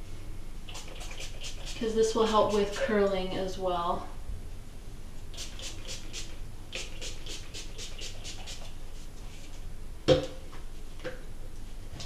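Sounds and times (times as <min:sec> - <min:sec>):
spray bottle spritzing: 0:00.7 - 0:01.9, 0:05.4 - 0:08.7.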